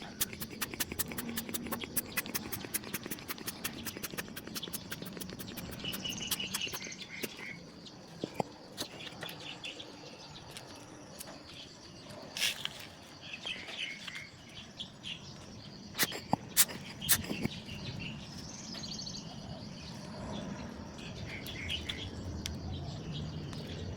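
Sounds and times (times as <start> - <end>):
sharp clicks: 0.0 - 7.5
small birds chirping: 0.0 - 23.9.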